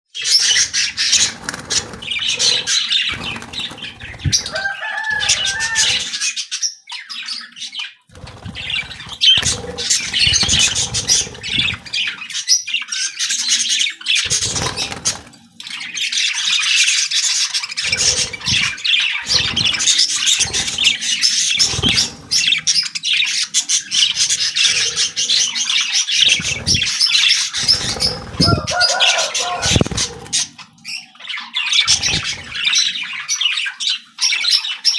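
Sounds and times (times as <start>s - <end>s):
harsh bird calls: 0.1s - 34.9s
small birds chirping: 0.1s - 34.9s
wing flaps: 0.6s - 6.1s, 8.1s - 12.1s, 14.3s - 15.4s, 17.8s - 22.8s, 26.2s - 27.0s, 27.6s - 30.5s, 31.9s - 32.8s.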